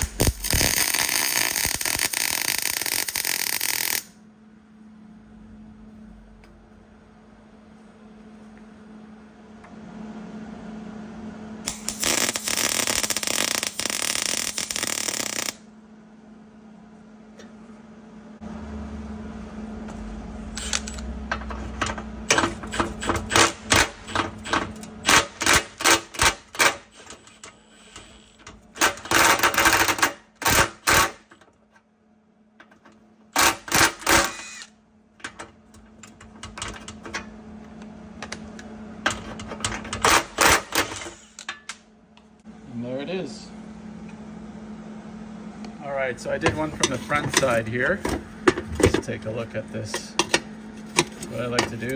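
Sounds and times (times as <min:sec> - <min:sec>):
welder arc crackling: 0:00.0 - 0:04.2, 0:11.7 - 0:15.7
low hum: 0:00.0 - 0:25.1.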